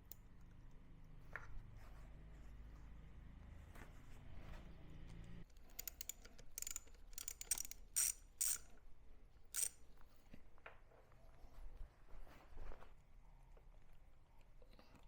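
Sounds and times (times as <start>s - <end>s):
socket ratchet clicking: 5.5s - 8.7s, 9.5s - 9.8s.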